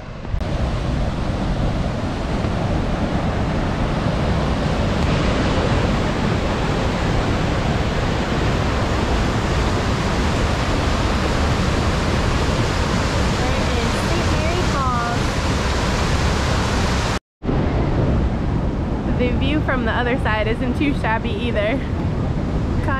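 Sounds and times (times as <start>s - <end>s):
waterfall roaring: 0.0s - 17.2s.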